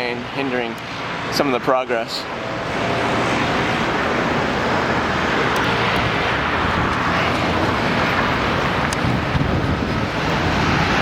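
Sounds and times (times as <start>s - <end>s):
jet airliner passing overhead: 2.2s - 11.0s.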